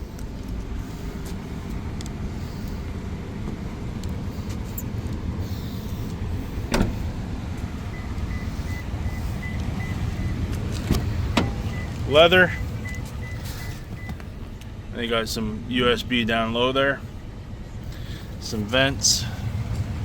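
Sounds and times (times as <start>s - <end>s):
steady low rumble: 0.0s - 20.0s
car warning chime beeping: 6.7s - 14.4s.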